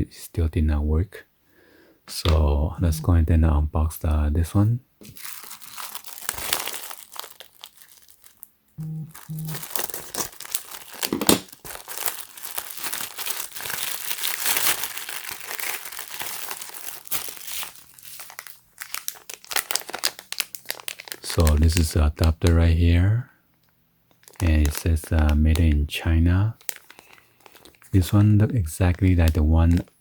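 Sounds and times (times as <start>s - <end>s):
packaging crinkling and tearing: 5.0s - 8.5s, 9.1s - 22.6s, 24.1s - 25.8s, 26.4s - 30.0s.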